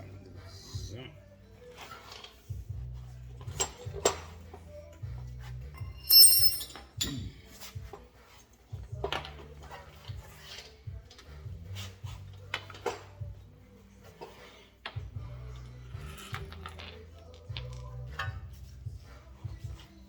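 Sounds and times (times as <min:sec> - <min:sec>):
loud ringing metal clink: 0:05.8 - 0:07.2
metal tools clinking and rattling: 0:05.8 - 0:07.5.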